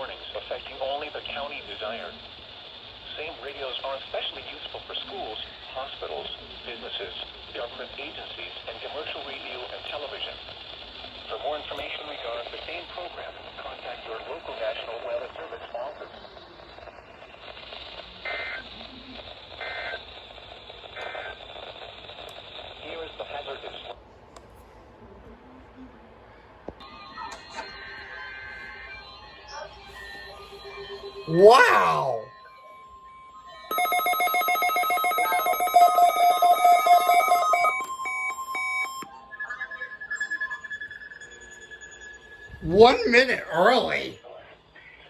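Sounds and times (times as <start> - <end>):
faint radio hiss: 0.0 - 32.9, 42.5 - 45.0
beeps of changing pitch: 33.2 - 42.6
fast pulsing alarm beeps: 33.4 - 42.5
buzzing digital data tones: 33.7 - 42.7.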